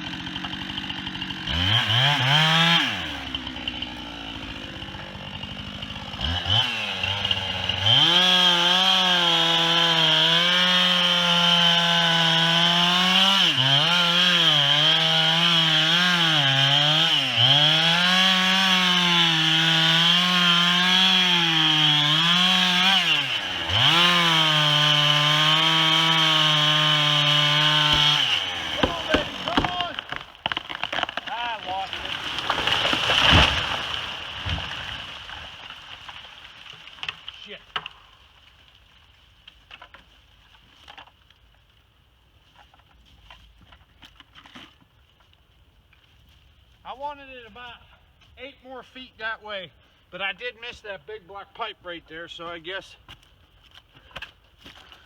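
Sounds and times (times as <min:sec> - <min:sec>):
chainsaw revving: 0:00.0 - 0:35.7
chainsaw cutting into tree: 0:00.0 - 0:38.0.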